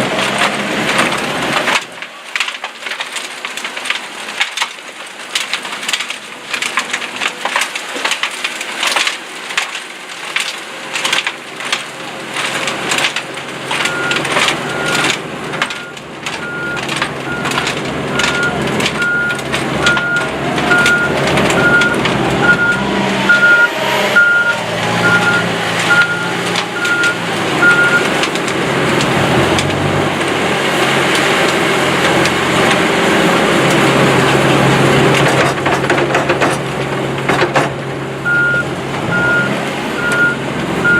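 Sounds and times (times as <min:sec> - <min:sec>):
diesel equipment running: 0:00.0 - 0:40.9
rocks clattering through screening machine: 0:00.0 - 0:40.9
reversing alarm beeping: 0:13.8 - 0:28.1, 0:38.3 - 0:40.9.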